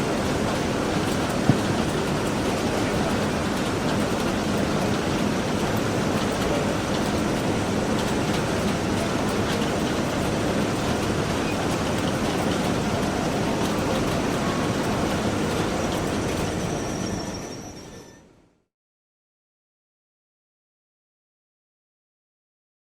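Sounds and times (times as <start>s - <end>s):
letter-sorting machine clatter: 0.0s - 18.1s.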